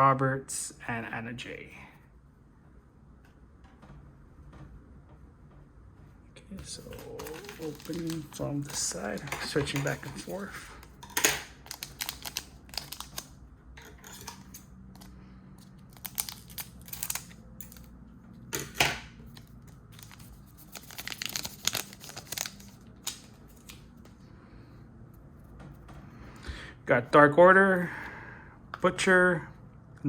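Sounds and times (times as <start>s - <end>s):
wrapper ripping: 6.8s - 10.4s, 11.6s - 13.3s, 15.9s - 17.4s, 19.3s - 23.8s
wrappers crinkling: 6.8s - 10.9s, 11.6s - 13.4s, 15.0s - 17.9s, 19.3s - 23.9s.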